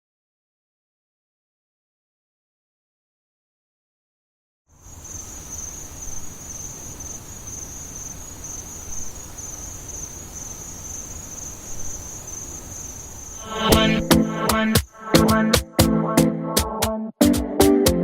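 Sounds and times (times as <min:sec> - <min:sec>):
insects trilling: 0:04.8 - 0:15.1.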